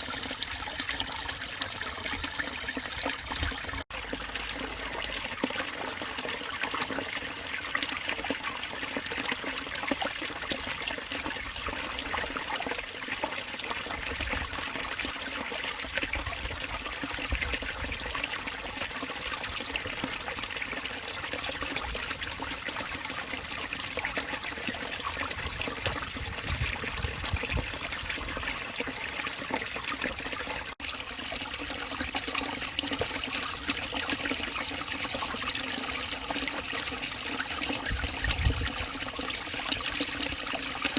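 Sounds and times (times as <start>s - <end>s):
stream trickling: 0.0s - 40.9s.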